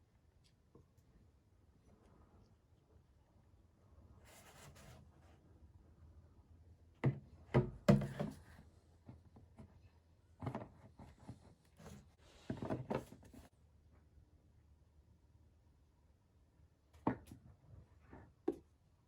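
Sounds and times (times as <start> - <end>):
hard objects knocking and clunking: 7.0 - 8.4.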